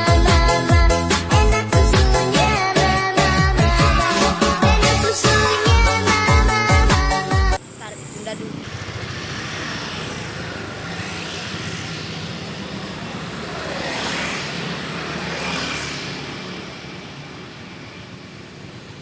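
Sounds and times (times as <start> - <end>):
road vehicles passing close: 7.5 - 19.0.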